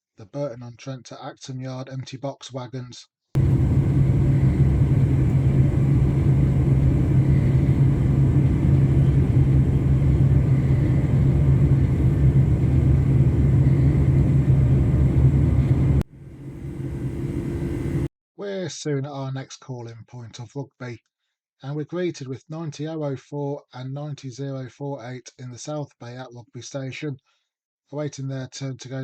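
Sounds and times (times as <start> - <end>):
train rumble inside carriage: 3.4 - 18.1.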